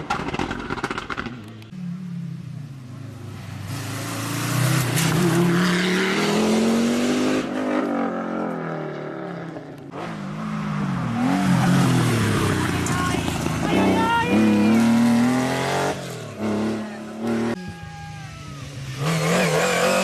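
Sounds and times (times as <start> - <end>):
rally car engines revving: 2.8 - 20.0.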